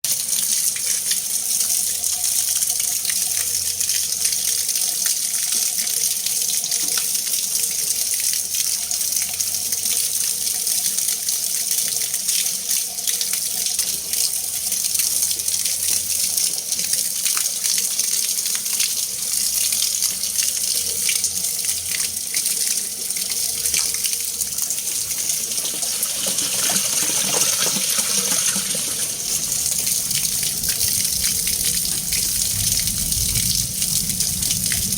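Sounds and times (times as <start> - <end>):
water rushing and splashing: 24.6 - 34.9.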